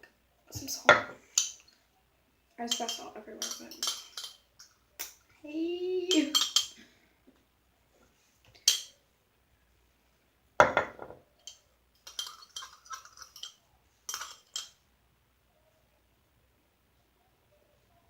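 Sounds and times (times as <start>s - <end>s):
utensil knock: 10.6s - 11.2s.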